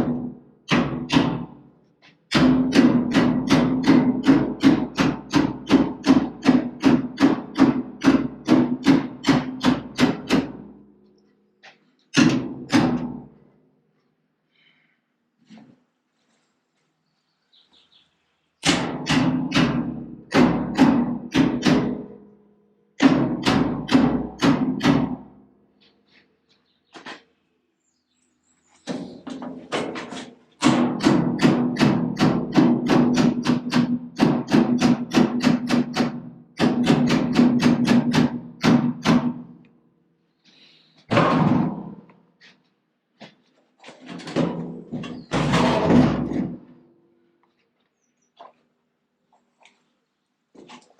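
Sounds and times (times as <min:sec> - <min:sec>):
hammer on sheet steel: 0:00.0 - 0:01.5, 0:02.3 - 0:10.8, 0:12.1 - 0:13.3, 0:18.6 - 0:22.2, 0:23.0 - 0:25.4, 0:28.9 - 0:39.6.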